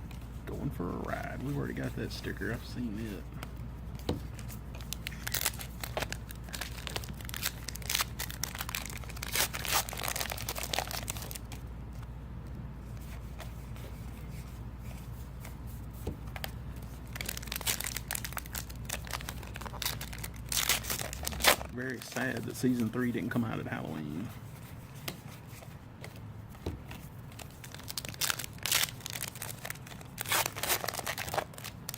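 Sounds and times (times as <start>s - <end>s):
cards being handled: 0.0s - 12.1s, 12.8s - 31.8s
steady low hum: 0.0s - 31.9s
card wrappers tearing and crinkling: 0.5s - 3.3s, 4.2s - 11.6s, 16.3s - 24.3s, 26.9s - 31.9s.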